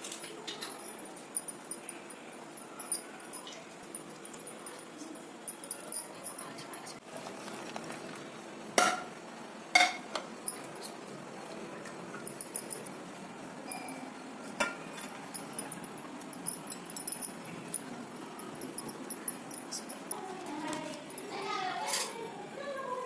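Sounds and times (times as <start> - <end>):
kitchen utensils clinking: 0.0 - 6.5, 11.8 - 12.9, 13.6 - 22.3.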